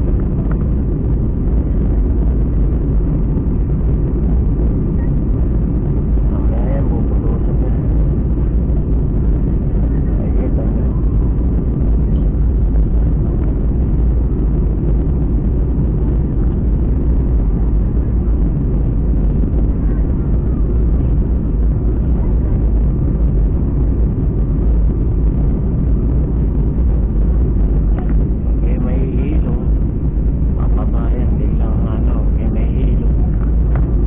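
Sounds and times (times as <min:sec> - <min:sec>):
jet cabin engine rumble: 0:00.0 - 0:34.0.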